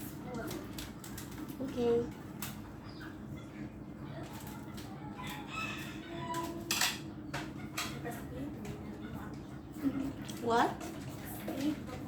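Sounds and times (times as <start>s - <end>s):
rooster crowing: 5.0s - 6.8s.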